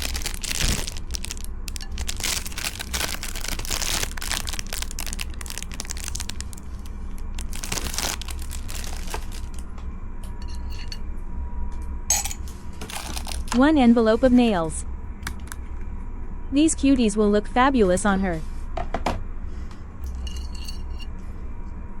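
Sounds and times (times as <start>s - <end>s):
small clicks and crackles: 0.0s - 9.6s
packaging crinkling and rustling: 0.0s - 9.7s, 12.8s - 13.6s.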